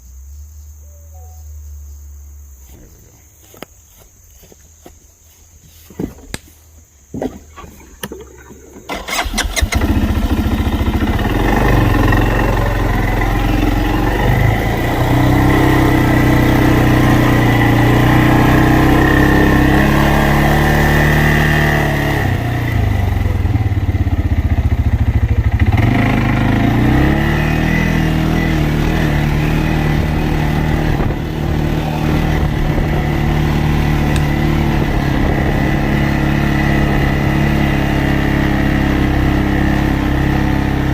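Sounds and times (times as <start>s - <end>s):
engine starting and running: 7.2s - 38.2s.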